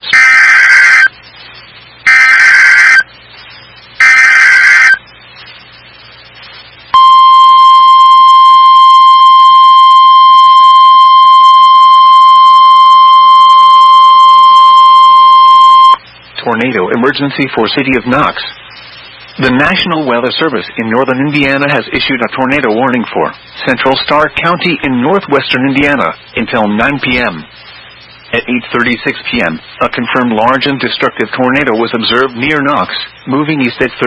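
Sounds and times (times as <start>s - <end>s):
warbling data tones: 0.0s - 16.1s
long steady beep: 0.1s - 1.2s, 2.0s - 3.1s, 4.0s - 5.1s, 6.9s - 16.0s.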